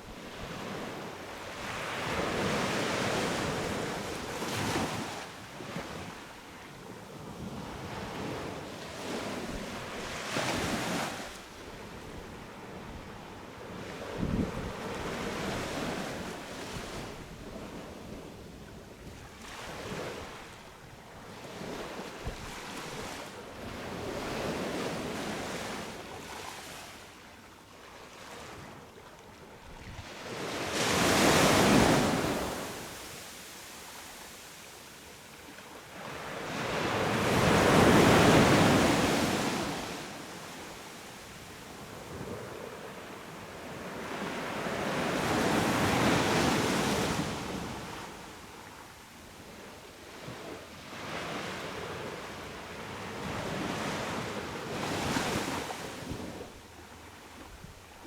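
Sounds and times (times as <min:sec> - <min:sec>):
sea waves breaking on beach: 0:29.8 - 0:48.9.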